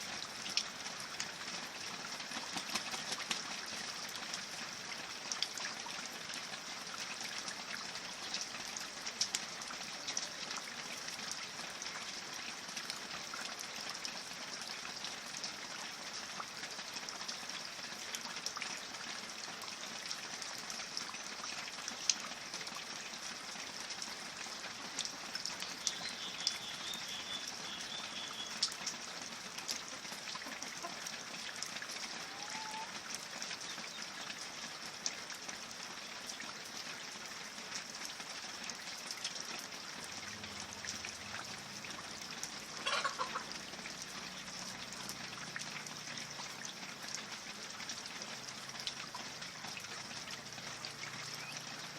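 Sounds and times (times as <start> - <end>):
steady rain falling: 0.0 - 51.9
bird chirps: 25.8 - 28.6.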